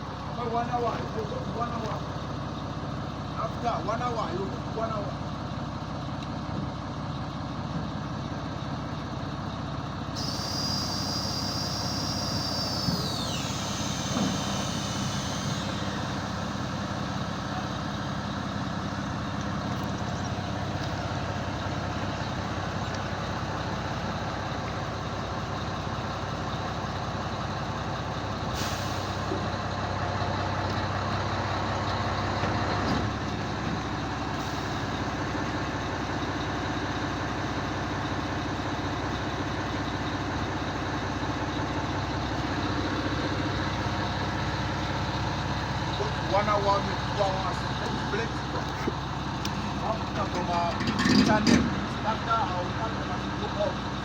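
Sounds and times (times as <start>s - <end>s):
diesel engine running: 0.0s - 54.0s
hiss of air: 10.2s - 16.5s.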